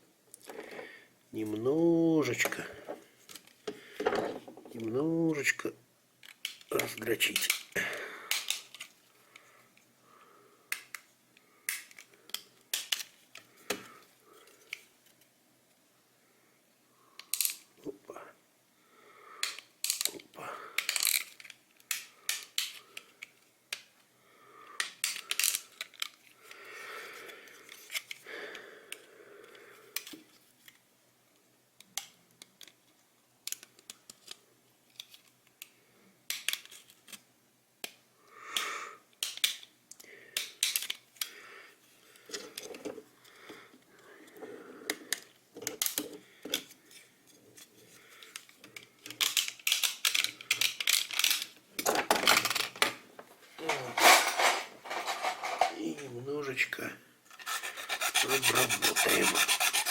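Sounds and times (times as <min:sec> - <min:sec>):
scraping plastic: 0:53.6 - 0:55.8.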